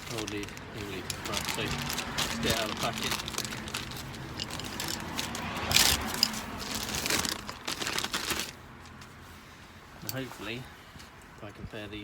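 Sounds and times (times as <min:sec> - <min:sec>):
packet crinkling: 0:00.0 - 0:08.6.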